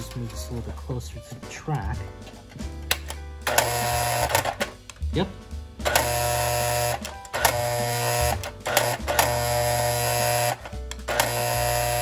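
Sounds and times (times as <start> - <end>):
electric mechanism buzzing: 5.9 - 12.0.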